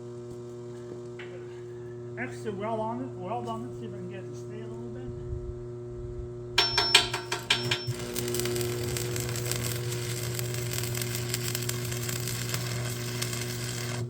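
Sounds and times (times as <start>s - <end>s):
low steady hum: 0.0s - 14.0s
arc welder crackling and popping: 6.6s - 14.0s.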